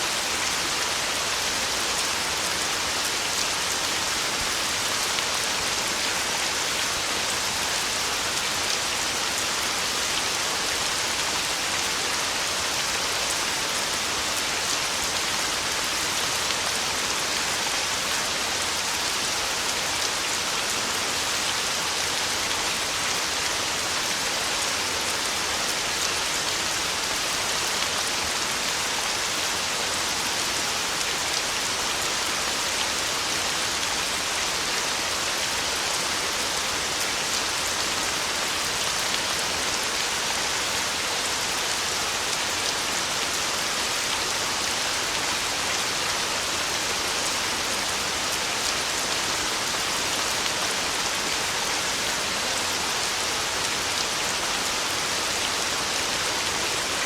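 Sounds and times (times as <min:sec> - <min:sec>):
heavy rain on a tin roof: 0:00.0 - 0:57.0.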